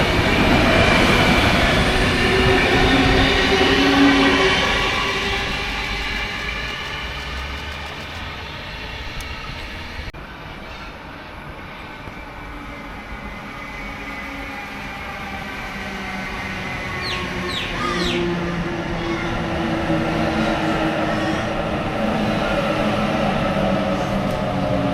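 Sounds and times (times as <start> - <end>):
train rail noise: 0.0 - 24.9
electric train motor whine: 1.3 - 10.1.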